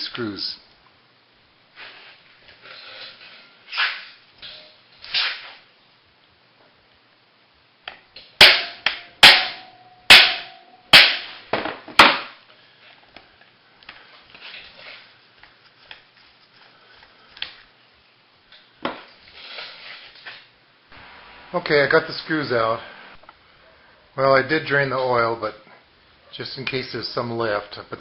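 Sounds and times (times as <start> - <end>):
quiet clicks and handling noises: 12.5 - 18.7.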